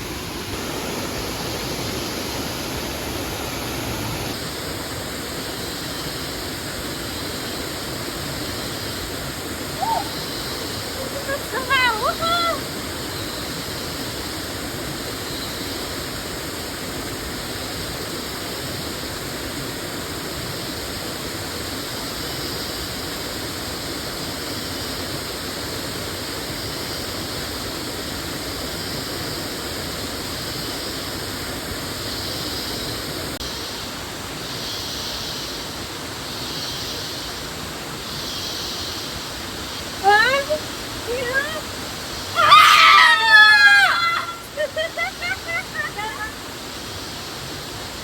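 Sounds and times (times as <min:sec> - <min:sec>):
waterfall rushing: 0:00.0 - 0:05.2, 0:09.1 - 0:13.0, 0:39.2 - 0:48.0
soft high pulsing hiss: 0:00.0 - 0:48.0.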